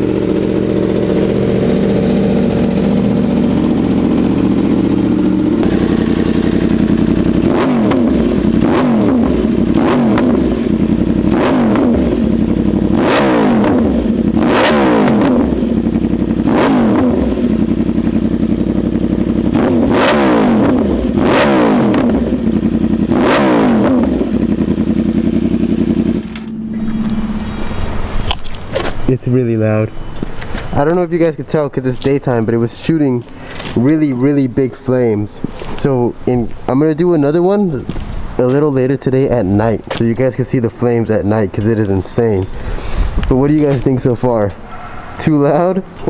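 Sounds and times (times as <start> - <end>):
motorcycle engine revving: 0.0 - 29.1, 42.0 - 45.3.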